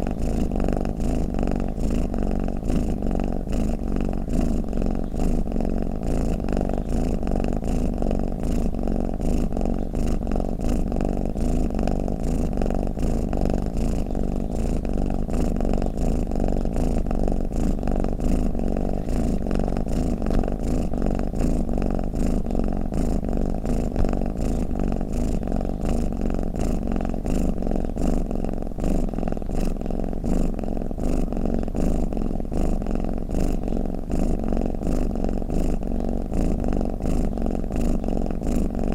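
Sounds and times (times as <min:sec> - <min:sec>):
cat purring: 0:00.0 - 0:38.9.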